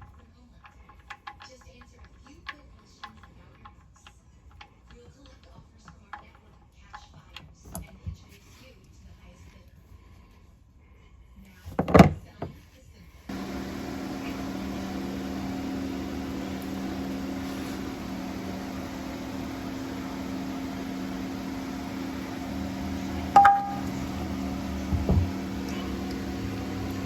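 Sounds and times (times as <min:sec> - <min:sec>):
steady mechanical hum: 0:13.3 - 0:27.0
dull thump: 0:19.9 - 0:26.0.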